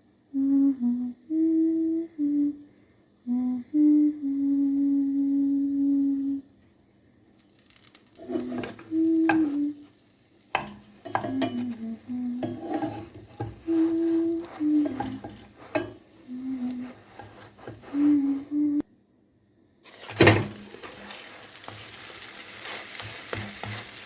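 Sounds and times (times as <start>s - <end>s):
hummed melody: 0.4s - 2.7s, 3.3s - 6.4s, 8.2s - 9.9s, 11.1s - 18.8s
utensils tapping on cookware: 8.2s - 9.7s, 10.5s - 18.0s, 22.6s - 24.0s.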